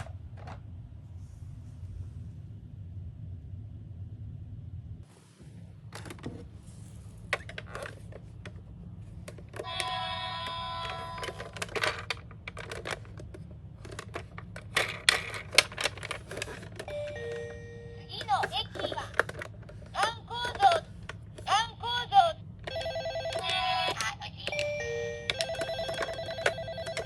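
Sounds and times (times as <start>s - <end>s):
plastic toy cars clicking and rattling: 7.2s - 8.6s, 9.2s - 16.9s, 18.2s - 21.5s
toy electronic tone: 22.7s - 27.0s.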